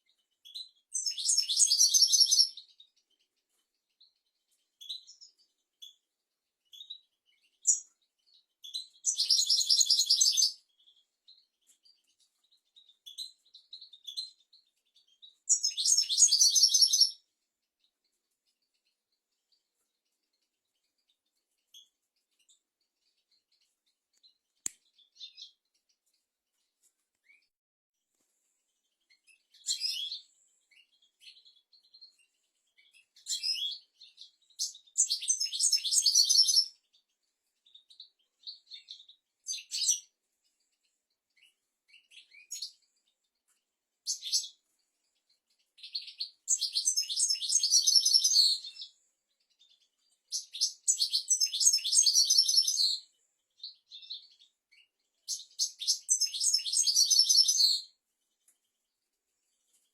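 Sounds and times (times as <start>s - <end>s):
goldfinch twittering song: 0.4s - 3.2s, 4.8s - 6.0s, 6.7s - 17.2s, 28.9s - 40.1s, 44.0s - 58.0s.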